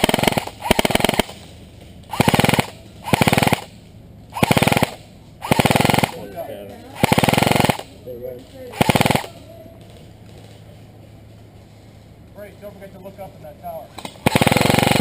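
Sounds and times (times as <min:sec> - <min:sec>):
airsoft gun firing bursts: 0:00.0 - 0:01.5, 0:02.1 - 0:06.3, 0:07.0 - 0:08.0, 0:08.7 - 0:09.4, 0:14.0 - 0:15.0.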